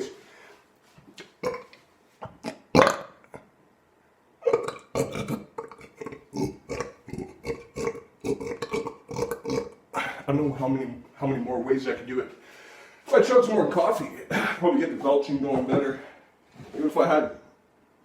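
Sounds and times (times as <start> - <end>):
man belching: 1.2 - 3.5, 4.4 - 10.3.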